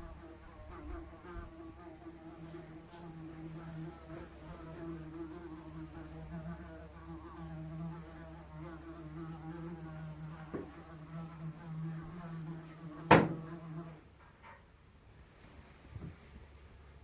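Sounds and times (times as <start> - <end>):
fly buzzing: 0.0 - 14.0
faint tap: 10.5 - 10.8.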